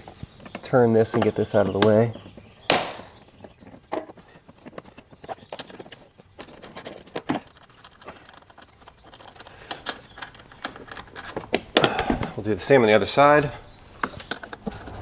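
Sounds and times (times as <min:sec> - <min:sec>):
hand tools clicking and tapping: 0:00.0 - 0:13.0.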